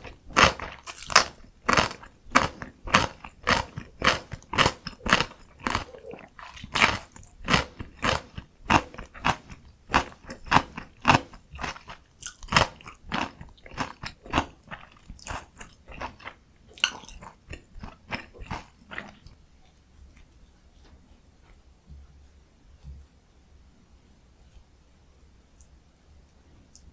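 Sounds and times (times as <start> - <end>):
wet crunchy chewing: 0.0 - 19.4.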